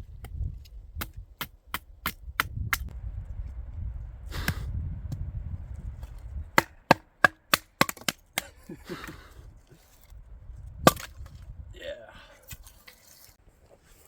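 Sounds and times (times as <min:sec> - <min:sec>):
low rumble: 0:02.9 - 0:06.6
firewood cracking and knocking: 0:06.0 - 0:08.5, 0:09.8 - 0:11.5.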